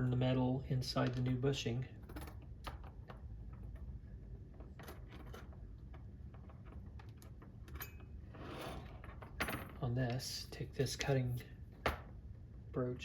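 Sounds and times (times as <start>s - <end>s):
low steady hum: 0.0s - 13.0s
metal tools clinking: 7.7s - 8.2s.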